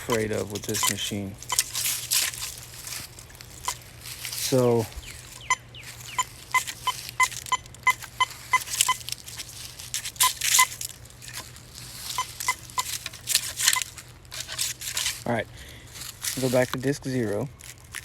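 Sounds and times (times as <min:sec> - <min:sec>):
metal detector beeps: 0:00.0 - 0:02.5, 0:03.6 - 0:03.9, 0:04.5 - 0:10.8, 0:12.0 - 0:13.9
search coil swishing: 0:00.0 - 0:04.9, 0:06.0 - 0:15.3
steady low hum: 0:00.0 - 0:18.0.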